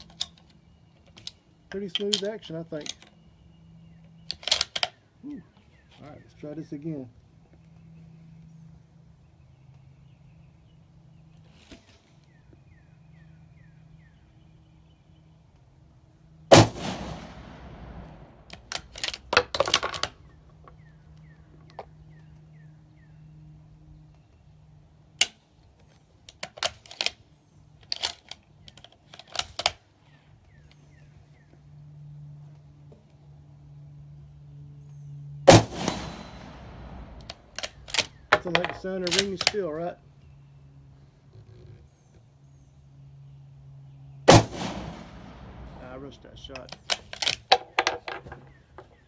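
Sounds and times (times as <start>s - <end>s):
rifle bolt clicks and clacks: 4.3s - 5.0s, 37.2s - 39.6s
rifle shot echoing: 16.5s - 18.7s, 35.5s - 38.7s, 44.3s - 46.2s.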